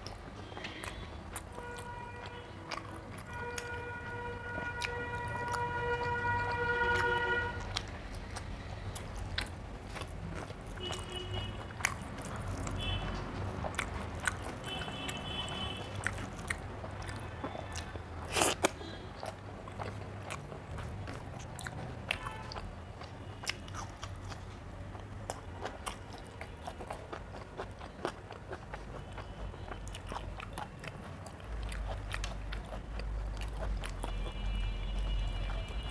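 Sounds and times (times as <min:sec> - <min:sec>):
chewing and mouth smacks: 0:00.0 - 0:35.9.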